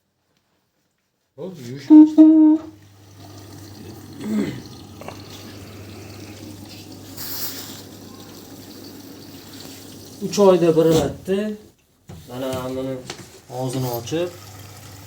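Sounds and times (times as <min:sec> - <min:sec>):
water running into washing machine: 0:01.4 - 0:15.0
water hissing: 0:01.8 - 0:11.2.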